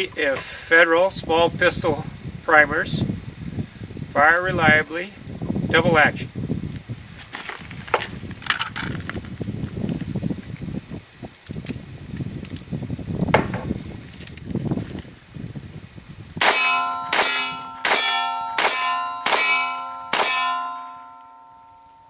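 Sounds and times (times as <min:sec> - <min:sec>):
gunshots ringing steel target: 0:16.4 - 0:21.0.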